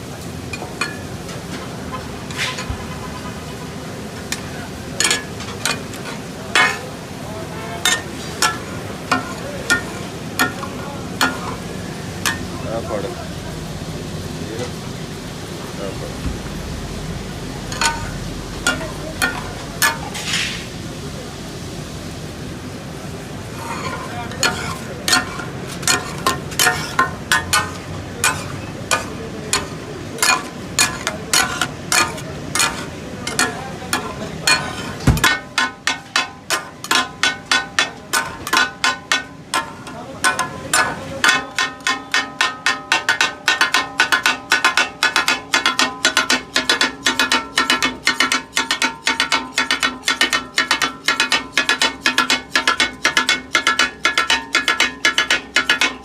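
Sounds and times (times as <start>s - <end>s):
metal spatulas clanging on griddle: 0.5s - 3.6s, 4.2s - 7.0s, 7.6s - 13.1s, 17.6s - 20.7s, 23.5s - 56.0s
low background rumble: 8.3s - 43.0s.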